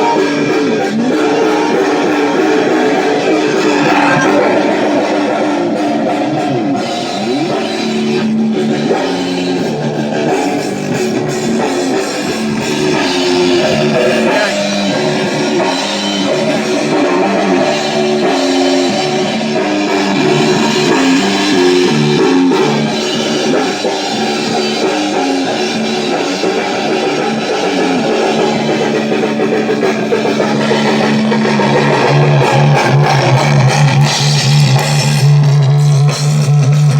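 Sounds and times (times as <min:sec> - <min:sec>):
distorted electric guitar riffing: 0:00.0 - 0:18.9.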